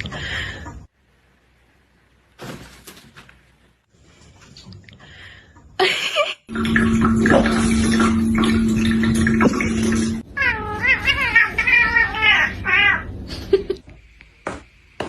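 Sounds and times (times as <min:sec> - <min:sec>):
cat yowling: 0:10.4 - 0:13.1.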